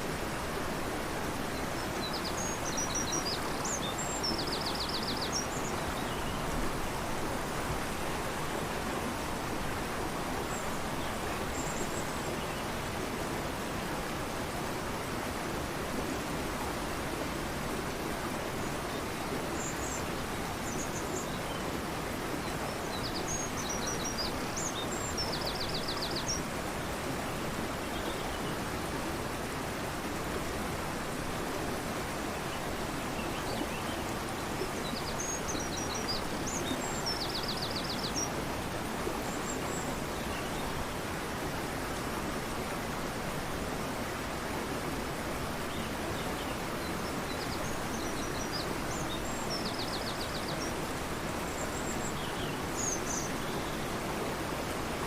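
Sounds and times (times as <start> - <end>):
river rushing: 0.0 - 55.0.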